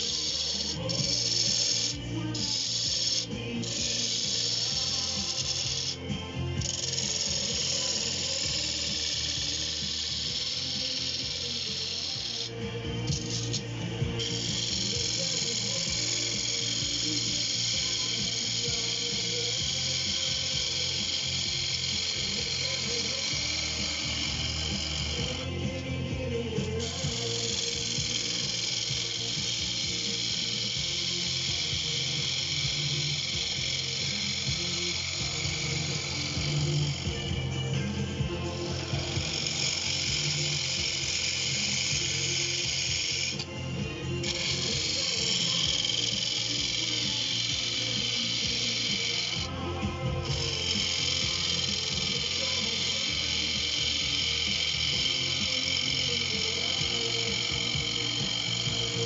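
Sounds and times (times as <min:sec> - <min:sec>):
music from a radio: 0:00.0 - 0:59.0
wood lathe cutting: 0:00.0 - 0:59.0.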